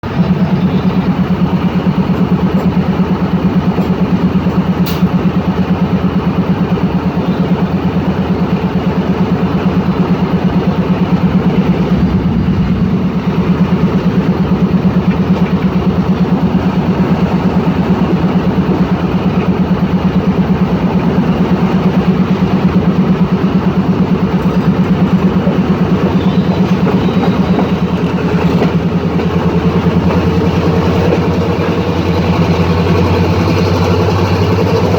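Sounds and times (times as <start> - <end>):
locomotive engine throbbing: 0.0 - 34.9.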